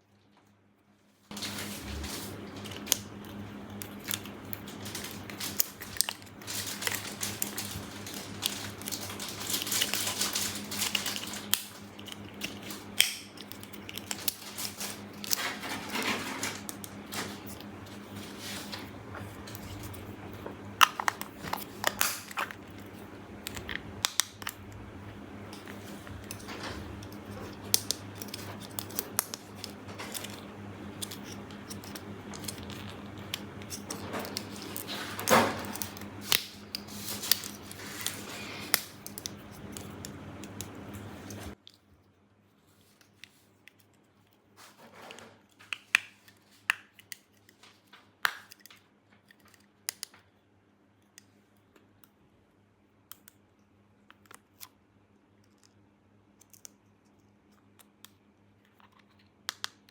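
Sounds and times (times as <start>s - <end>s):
packaging crackling and clicking: 1.3s - 24.8s, 25.5s - 41.7s.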